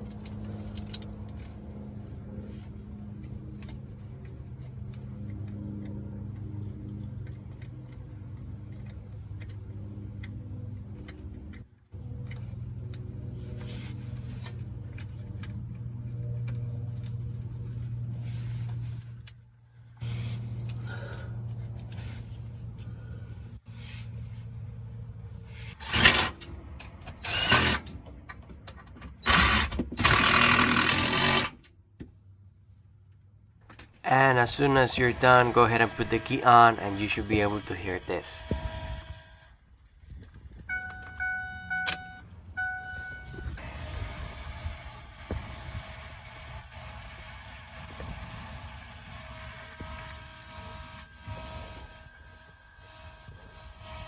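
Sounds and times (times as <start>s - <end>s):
power tool motor hum: 29.3s - 31.5s, 35.0s - 39.6s, 43.6s - 54.0s.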